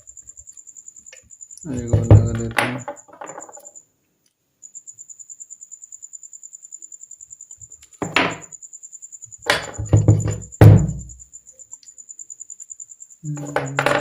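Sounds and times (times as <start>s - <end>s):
tools knocking and clunking: 1.7s - 3.7s, 8.0s - 8.5s, 9.5s - 11.1s, 13.4s - 14.0s.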